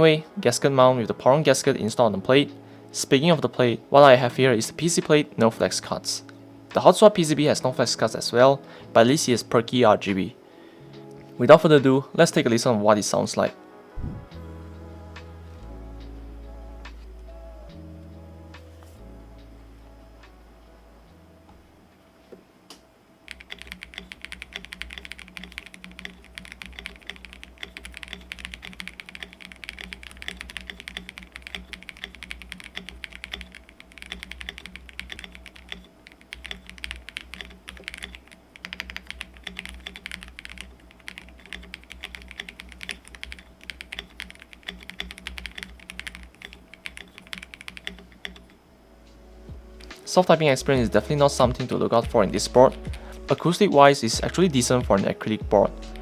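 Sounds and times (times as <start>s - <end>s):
fast typing on mechanical keyboard: 23.3s - 48.6s, 52.1s - 53.4s.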